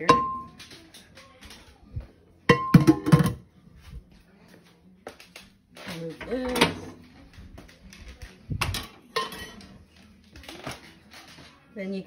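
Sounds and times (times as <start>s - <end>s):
hard objects clattering in sink: 2.5s - 3.5s.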